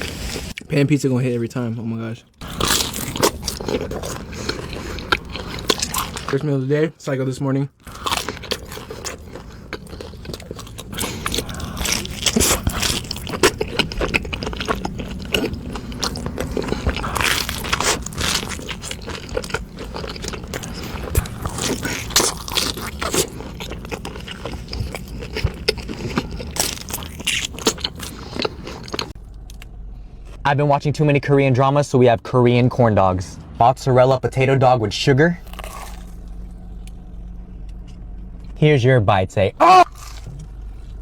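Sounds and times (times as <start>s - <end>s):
biting and chewing food: 0.0s - 0.7s, 2.3s - 6.6s, 7.8s - 30.4s, 35.4s - 38.6s, 39.6s - 41.0s.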